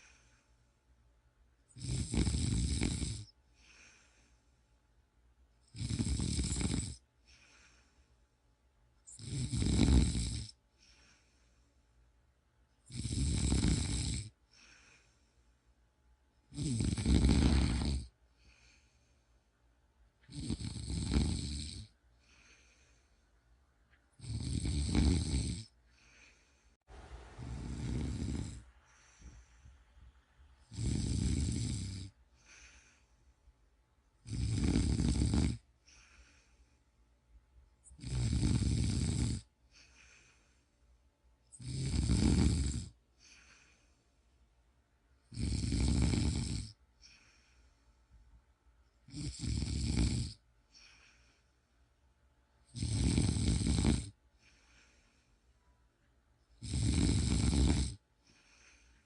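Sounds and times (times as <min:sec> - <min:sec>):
person snoring: 0:01.7 - 0:04.2, 0:05.7 - 0:07.8, 0:09.1 - 0:11.3, 0:12.8 - 0:15.2, 0:16.5 - 0:19.0, 0:20.2 - 0:23.0, 0:24.2 - 0:26.4, 0:27.2 - 0:29.5, 0:30.6 - 0:33.1, 0:34.2 - 0:36.6, 0:37.8 - 0:40.4, 0:41.5 - 0:43.8, 0:45.3 - 0:47.6, 0:49.1 - 0:51.2, 0:52.6 - 0:55.0, 0:56.6 - 0:59.0.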